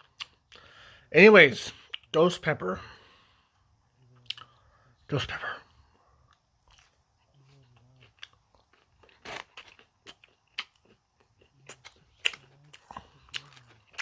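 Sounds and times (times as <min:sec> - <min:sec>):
person chewing crunchy food: 0:00.0 - 0:00.8, 0:04.0 - 0:04.7, 0:05.8 - 0:14.0.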